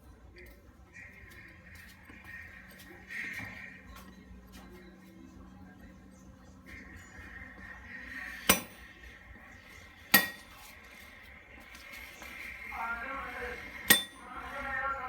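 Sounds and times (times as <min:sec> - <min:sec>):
hammer striking steel: 0:06.9 - 0:10.8, 0:13.6 - 0:14.4.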